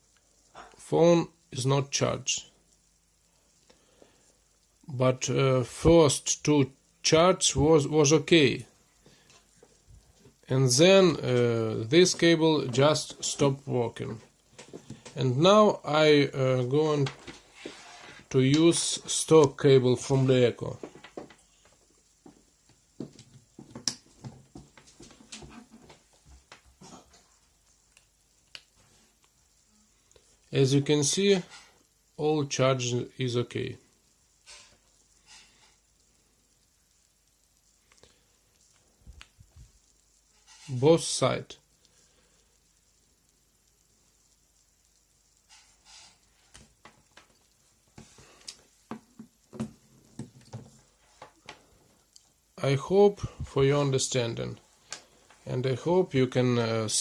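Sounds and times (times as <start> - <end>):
charging cable clicks and rustles: 16.9 - 30.3, 44.5 - 52.4.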